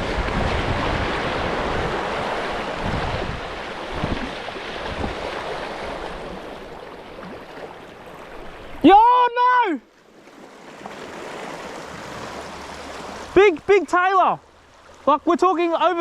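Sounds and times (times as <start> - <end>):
wind buffeting microphone: 0.0 - 6.8
surf washing in: 0.0 - 16.0.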